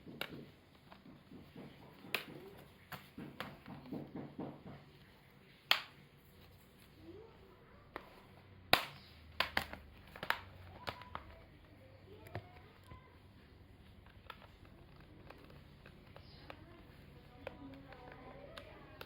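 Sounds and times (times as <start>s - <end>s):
hands handling a laptop: 0.0s - 7.0s.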